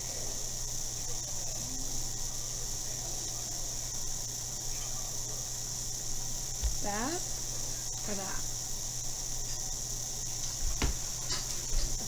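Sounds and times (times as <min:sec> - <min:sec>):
high-pitched hiss: 0:00.0 - 0:12.0
low electrical hum: 0:00.0 - 0:12.0.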